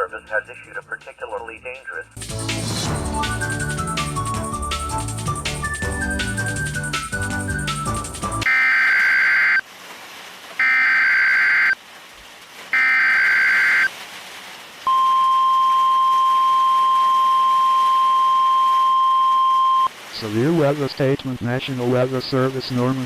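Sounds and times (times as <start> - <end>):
steady warning alarm tone: 12.8 - 13.9.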